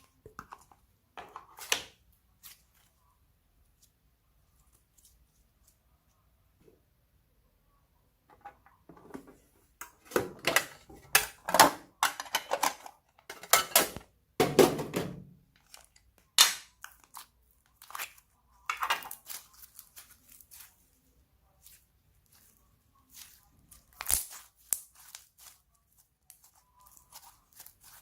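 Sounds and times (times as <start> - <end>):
slime squishing by hand: 0.0 - 6.4, 15.6 - 28.0.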